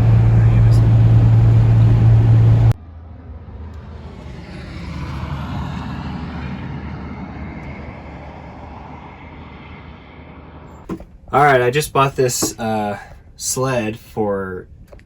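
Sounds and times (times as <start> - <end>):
vehicle engine humming: 0.0 - 2.8, 5.1 - 15.0
road noise of passing vehicle: 0.0 - 11.8.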